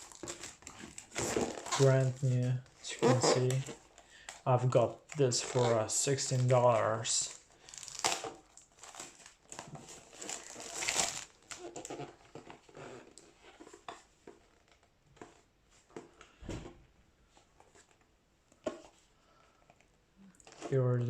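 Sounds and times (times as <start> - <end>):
plastic wrap crinkling: 0.0 - 13.8
cardboard rustling: 0.0 - 16.0.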